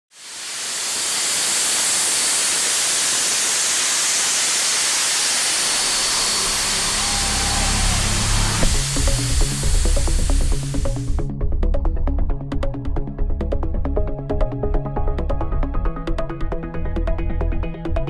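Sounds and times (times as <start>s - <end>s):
loud steady noise hiss: 0.1s - 11.3s
low bass tones: 5.7s - 18.0s.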